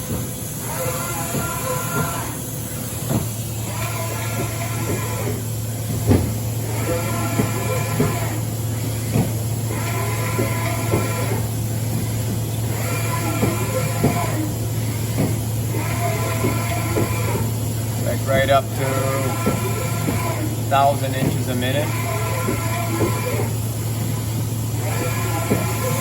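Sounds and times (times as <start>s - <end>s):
machine axis drives whining: 0.0s - 26.0s
steady low hum: 0.0s - 26.0s.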